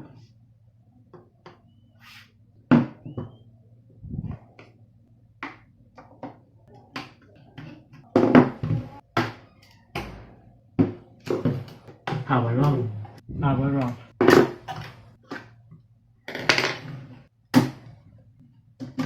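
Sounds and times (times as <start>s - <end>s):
steady low hum: 3.3s - 5.4s, 12.2s - 15.2s.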